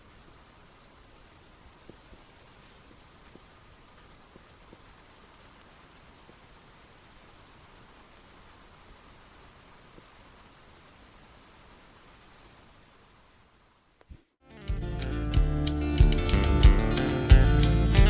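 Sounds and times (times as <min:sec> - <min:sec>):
crickets chirping: 0:00.0 - 0:14.4.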